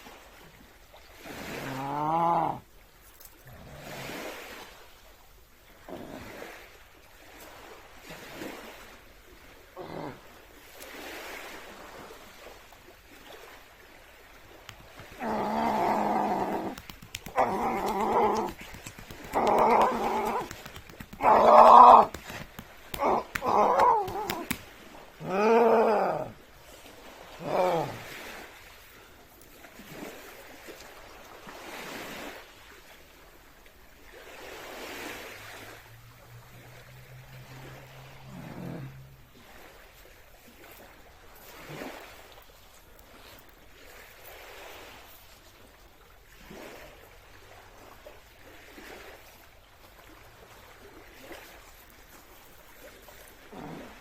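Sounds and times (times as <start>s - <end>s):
loud strained vocal cries: 14.7s - 24.6s, 25.2s - 26.4s.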